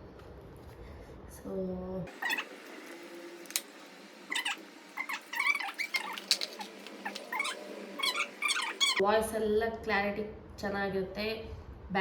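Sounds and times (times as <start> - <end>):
low background hum: 0.0 - 12.0
child squealing and babbling: 2.1 - 2.5, 4.3 - 9.0.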